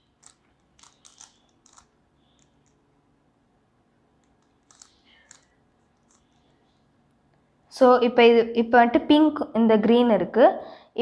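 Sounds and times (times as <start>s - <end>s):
puzzle cube layers clicking: 0.0s - 2.8s, 4.2s - 6.4s.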